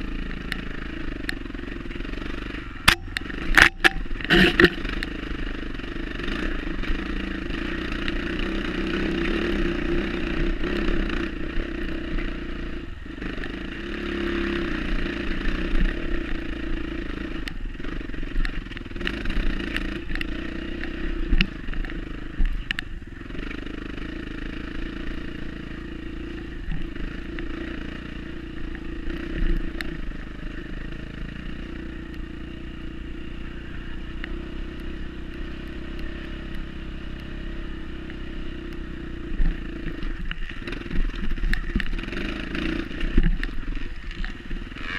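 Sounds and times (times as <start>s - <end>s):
dirt bike engine revving: 0.0s - 44.9s.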